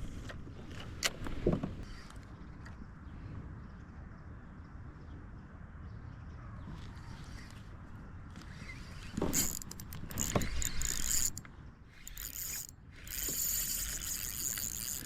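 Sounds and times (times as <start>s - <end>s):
fishing reel being cranked: 8.4s - 11.4s, 12.0s - 15.0s.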